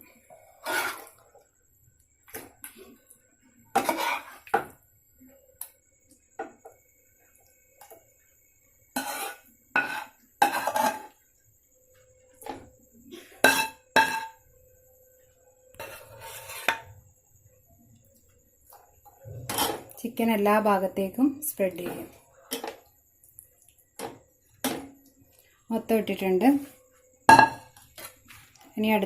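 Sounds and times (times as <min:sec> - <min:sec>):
utensil clinking and scraping pans: 0:03.8 - 0:04.7, 0:09.0 - 0:11.2, 0:19.3 - 0:20.0.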